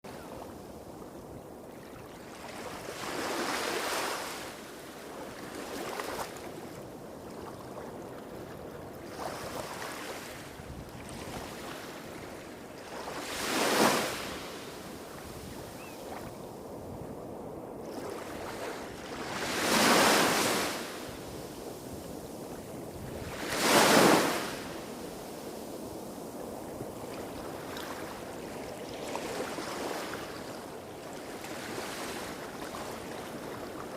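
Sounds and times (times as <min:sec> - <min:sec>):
small waves washing on shore: 0:00.1 - 0:17.0, 0:17.8 - 0:33.9.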